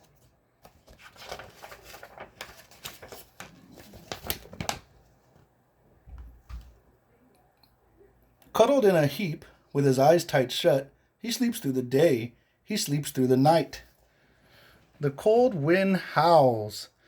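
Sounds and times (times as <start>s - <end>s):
paper rustling and crinkling: 0.0s - 5.5s.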